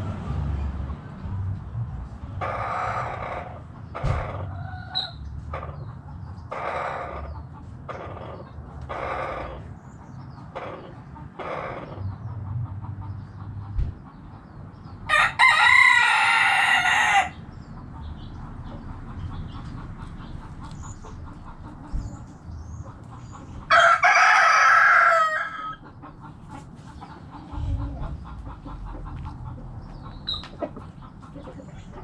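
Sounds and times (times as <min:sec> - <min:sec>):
hens clucking: 0:02.2 - 0:32.0
roosters crowing: 0:02.4 - 0:05.8, 0:06.5 - 0:09.7, 0:10.5 - 0:12.1, 0:15.0 - 0:17.5, 0:23.2 - 0:29.7.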